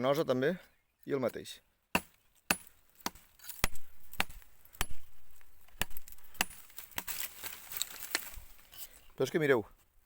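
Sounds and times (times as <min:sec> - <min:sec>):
hatchet chopping a branch: 0:01.9 - 0:08.3.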